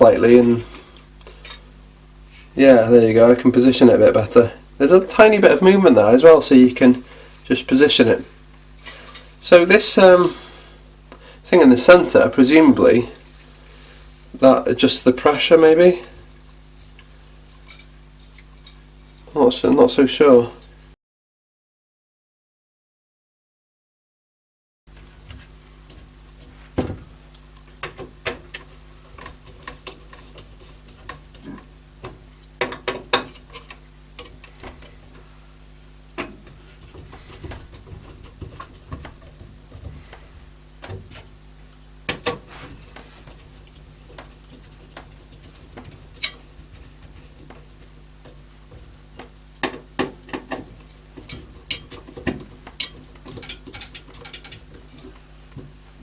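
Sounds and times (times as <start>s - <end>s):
steady low hum: 0.0s - 21.0s, 24.9s - 56.0s.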